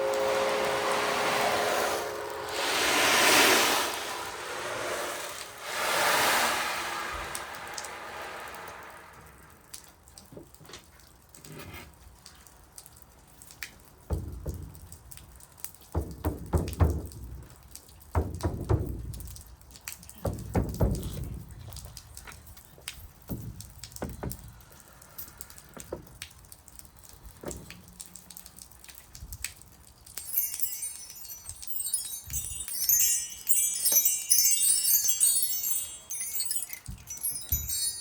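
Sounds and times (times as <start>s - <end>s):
rain-like rushing: 0.0s - 10.1s
ringing chime tones: 30.2s - 38.0s.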